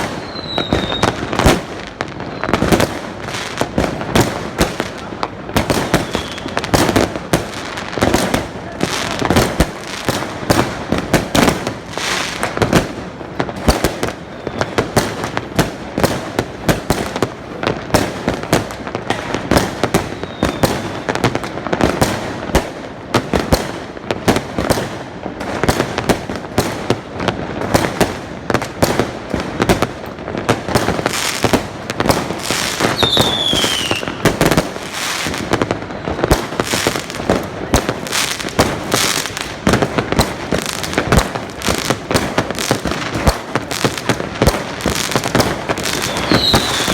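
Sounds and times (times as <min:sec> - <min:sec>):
falling firework whistle: 0:00.0 - 0:02.9, 0:05.6 - 0:07.0, 0:13.9 - 0:15.2, 0:19.8 - 0:21.5, 0:32.5 - 0:36.8, 0:44.8 - 0:46.9
fireworks bangs and crackles: 0:00.0 - 0:46.9.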